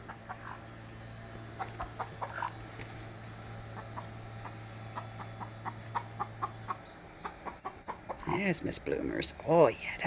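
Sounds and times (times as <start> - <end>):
hen clucking softly: 0.0 - 0.7, 1.6 - 2.6, 3.8 - 8.4
steady low hum: 0.0 - 10.0.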